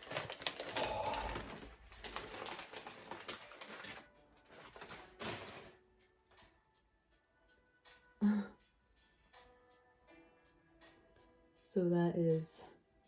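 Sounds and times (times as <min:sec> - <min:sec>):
packing material crinkling: 0:00.0 - 0:05.8.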